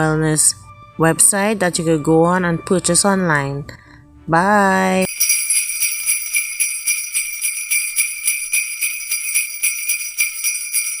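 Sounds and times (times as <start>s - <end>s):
jingle bells shaken: 5.0s - 11.0s.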